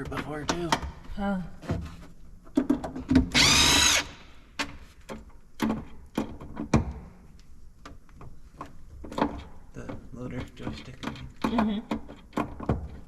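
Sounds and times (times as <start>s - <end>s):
cordless drill whirring: 3.3s - 4.2s.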